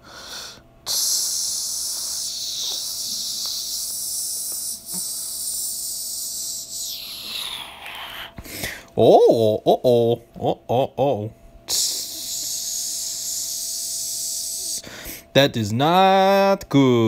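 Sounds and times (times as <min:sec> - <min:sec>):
steady hiss: 0:00.0 - 0:08.3.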